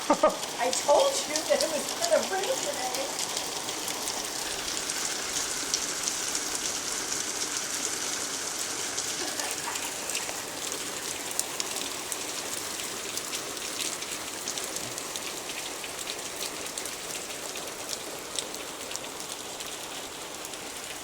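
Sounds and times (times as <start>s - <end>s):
heavy rain hiss: 0.0s - 21.0s
hailstones clicking on hard surfaces: 0.5s - 6.8s.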